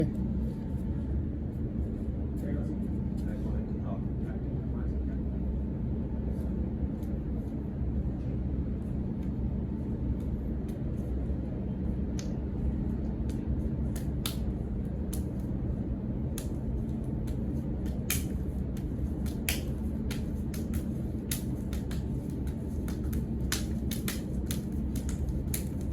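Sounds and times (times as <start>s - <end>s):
hands slapping in sparring drills: 13.3s - 15.5s, 17.2s - 25.9s.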